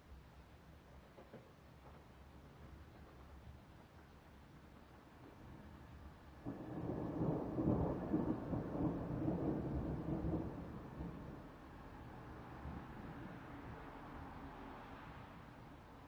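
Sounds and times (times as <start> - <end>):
thunder rumbling: 6.4 - 11.8.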